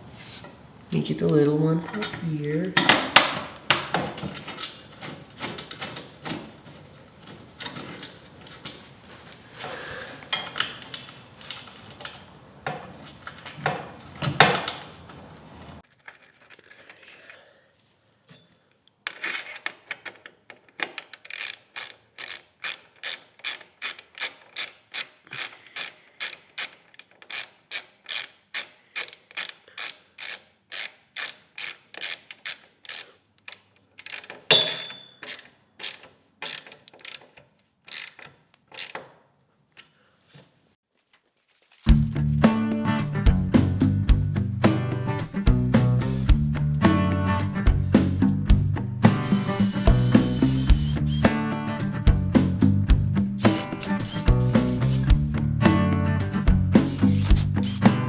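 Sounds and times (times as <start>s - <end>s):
knocks and handling sounds: 1.3s - 58.0s
ratchet wrench clicking: 20.8s - 39.0s, 49.0s - 52.0s, 53.2s - 58.0s.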